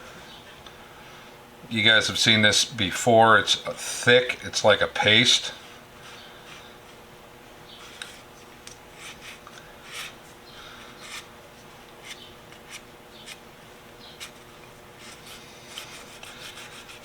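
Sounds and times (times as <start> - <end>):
faint hum: 0.0 - 17.0
rubbing strokes on wood: 15.0 - 17.0.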